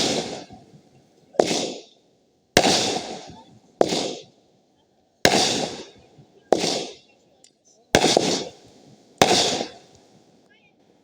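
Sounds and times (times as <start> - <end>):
fireworks bangs with hiss: 0.0 - 4.5, 5.2 - 7.2, 7.9 - 11.0.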